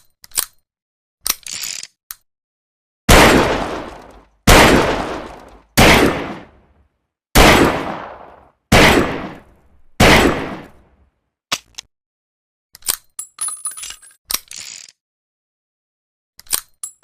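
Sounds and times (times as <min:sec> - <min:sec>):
revolver gunshots echoing: 0:03.1 - 0:06.7, 0:07.4 - 0:10.9.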